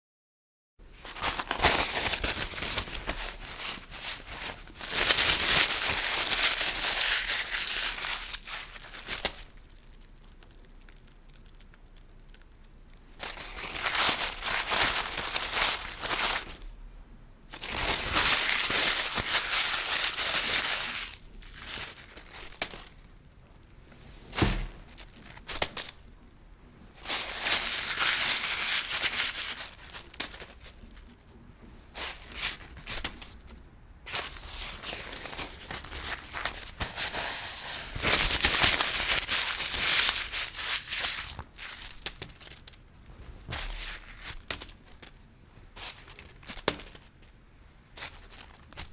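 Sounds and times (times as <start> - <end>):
paper crumpling: 1.0 - 12.4, 13.2 - 16.6, 17.6 - 23.1, 27.0 - 31.2, 34.1 - 42.8.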